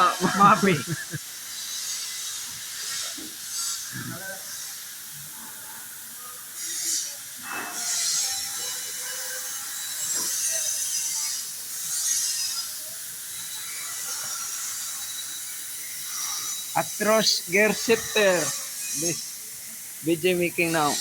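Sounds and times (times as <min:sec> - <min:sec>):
hissing bursts: 0:15.6 - 0:21.0.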